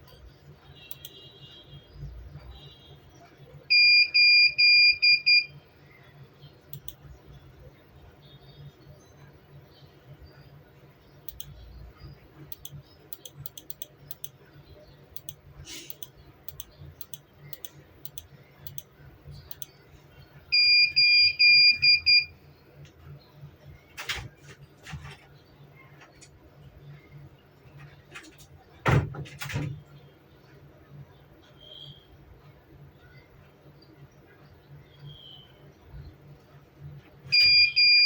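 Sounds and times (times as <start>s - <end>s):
faint clicks: 0.9s - 1.2s, 6.7s - 7.1s, 11.2s - 11.6s, 12.5s - 14.4s, 15.1s - 19.8s.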